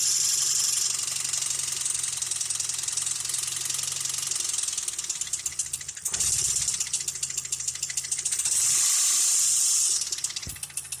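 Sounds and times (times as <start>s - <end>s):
engine running with knocking: 0.0s - 11.0s
loud hiss: 8.6s - 10.0s.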